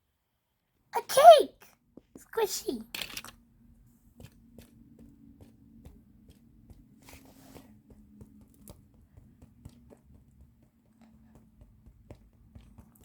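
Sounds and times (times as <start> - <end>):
small toys clicking and rustling: 2.6 - 3.4.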